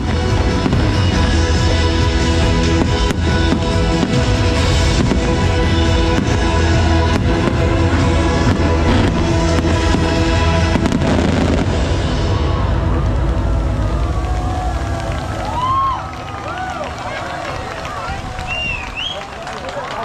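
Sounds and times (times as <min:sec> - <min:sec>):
loud music with heavy bass: 0:00.0 - 0:14.2
fireworks bursting: 0:00.0 - 0:19.4.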